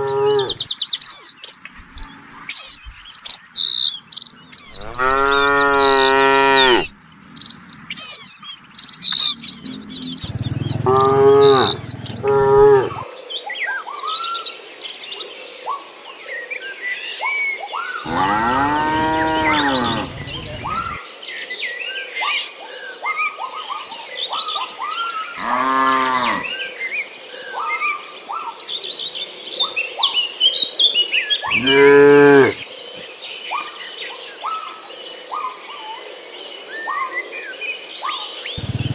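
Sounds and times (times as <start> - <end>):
small birds chirping: 0.0 - 12.5, 18.0 - 21.2, 38.5 - 38.9
cattle mooing: 4.9 - 6.9, 9.6 - 13.0, 18.1 - 21.0, 25.4 - 26.5, 31.5 - 32.6, 38.6 - 38.9.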